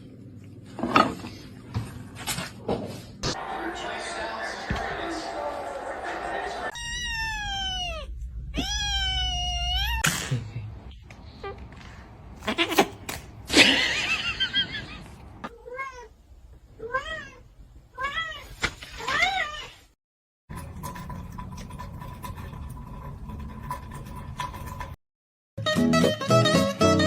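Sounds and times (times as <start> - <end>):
cat meowing: 6.7 - 10.0.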